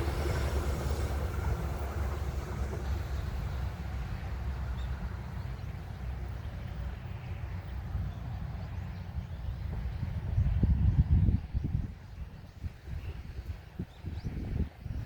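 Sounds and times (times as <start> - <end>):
electric train passing: 0.0 - 9.2.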